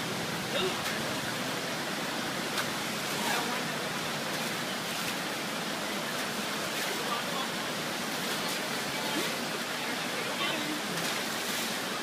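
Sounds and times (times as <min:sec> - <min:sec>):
river water rushing: 0:00.0 - 0:12.0
faint voices: 0:03.0 - 0:12.0.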